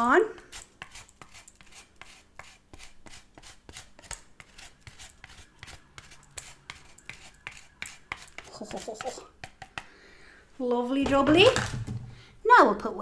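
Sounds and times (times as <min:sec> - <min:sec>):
light taps and scrapes on plate: 0:06.0 - 0:09.9.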